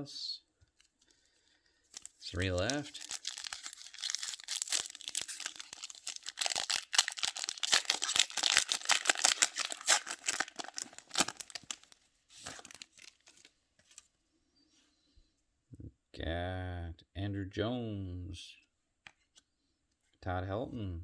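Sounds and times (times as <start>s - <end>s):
wrapper tearing and crinkling: 1.9s - 14.0s.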